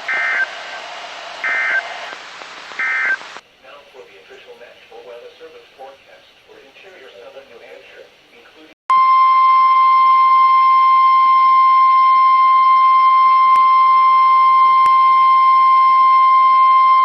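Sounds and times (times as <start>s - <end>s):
steady warning alarm beep: 0.0s - 0.5s, 1.4s - 1.9s, 2.8s - 3.2s.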